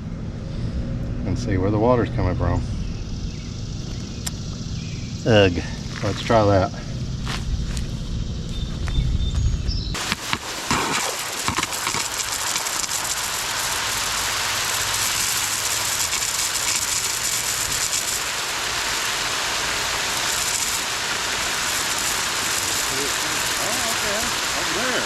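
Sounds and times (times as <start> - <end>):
hiss of spraying water: 10.0 - 25.0.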